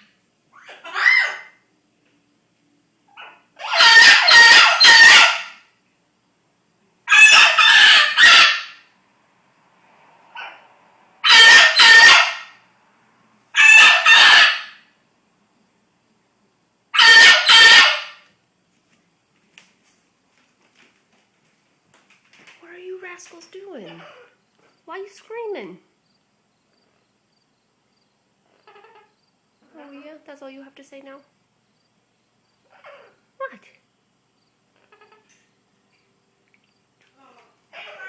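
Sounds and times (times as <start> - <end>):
parrots screaming: 0.0 - 1.7, 3.1 - 5.7, 7.1 - 8.9, 10.3 - 12.7, 13.5 - 15.0, 16.9 - 18.3, 23.8 - 25.2, 28.4 - 29.2, 32.6 - 33.3, 34.8 - 35.4, 37.3 - 38.0.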